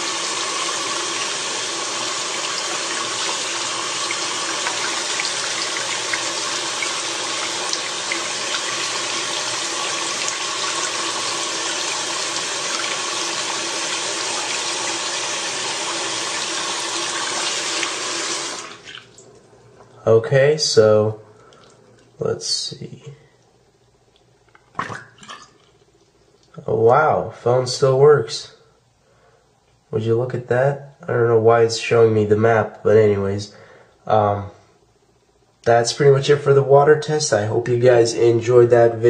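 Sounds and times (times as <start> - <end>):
tap water running and splashing: 0.0 - 19.4.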